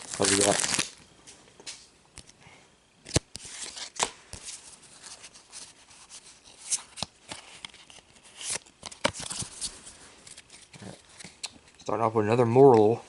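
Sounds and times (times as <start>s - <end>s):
trading cards snapping and rustling: 0.0s - 1.0s, 3.0s - 4.6s, 6.6s - 9.7s.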